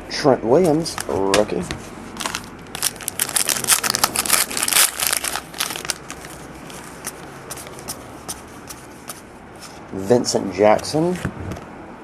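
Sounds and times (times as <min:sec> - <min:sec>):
foil wrapper crinkling: 0:02.2 - 0:07.2.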